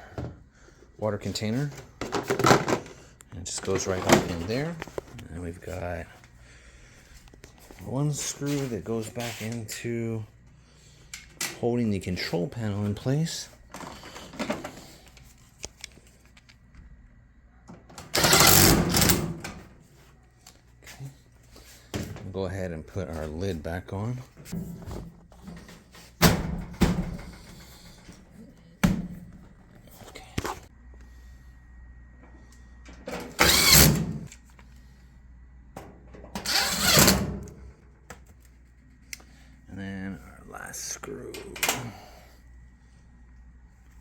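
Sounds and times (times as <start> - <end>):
power drill driving screw: 18.1 - 19.2, 33.3 - 34.2, 36.4 - 37.3.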